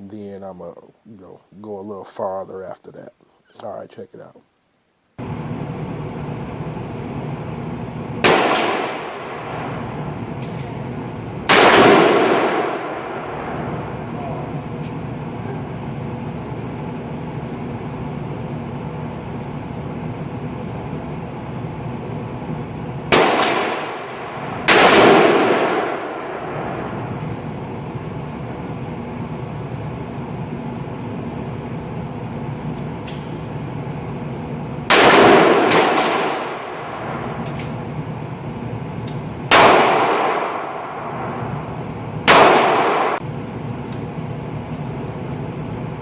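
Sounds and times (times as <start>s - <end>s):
steady background noise: 0.0s - 46.0s
rifle shots: 8.2s - 9.9s, 11.5s - 14.0s, 23.1s - 27.2s, 34.9s - 37.8s, 39.5s - 41.6s, 42.2s - 43.2s.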